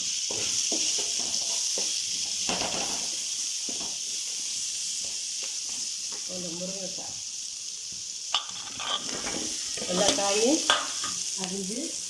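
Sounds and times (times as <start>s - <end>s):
food sizzling in hot oil: 0.0s - 12.0s
spoon scraping a pan: 8.3s - 11.4s.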